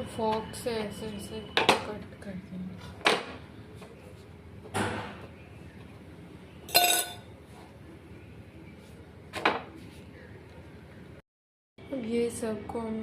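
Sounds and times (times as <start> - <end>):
fork clinking against dish: 6.7 - 7.2.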